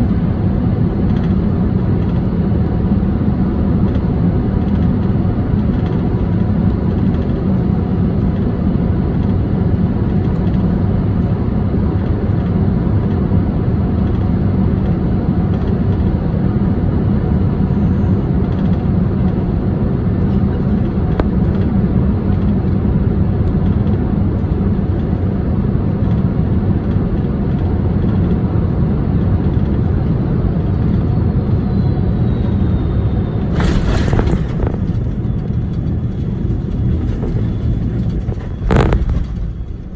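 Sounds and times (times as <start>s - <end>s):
aircraft cabin engine rumble: 0.0s - 39.9s
faint falling whine: 31.5s - 39.9s
wheels touching down on runway: 33.4s - 39.9s.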